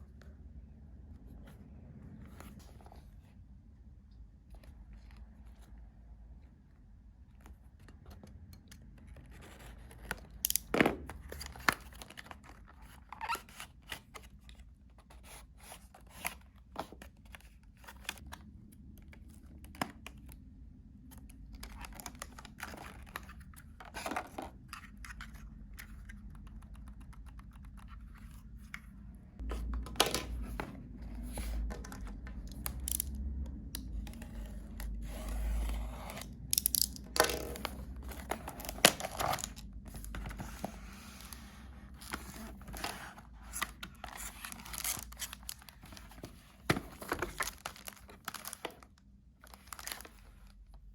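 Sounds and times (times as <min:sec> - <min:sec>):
packaging tearing and crinkling: 0:44.0 - 0:46.1, 0:47.1 - 0:48.9, 0:49.5 - 0:50.1.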